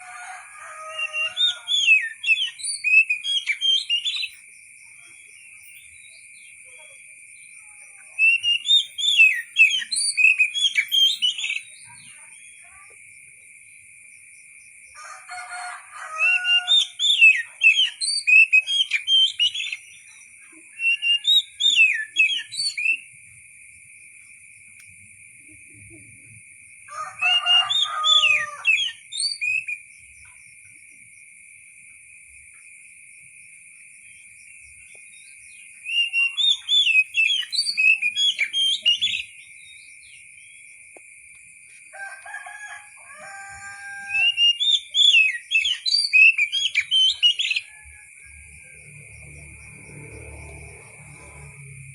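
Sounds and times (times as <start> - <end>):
bird singing whistled phrases: 1.0 - 4.4, 7.9 - 12.6, 16.3 - 20.0, 20.7 - 23.1, 27.3 - 29.8, 35.8 - 39.4, 44.0 - 47.7.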